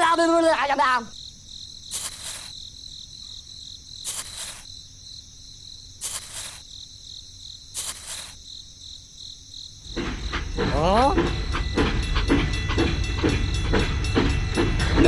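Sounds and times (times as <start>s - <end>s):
crickets chirping: 0.0s - 15.0s
short rushing noise bursts: 4.1s - 4.7s, 6.0s - 6.6s, 7.8s - 8.4s.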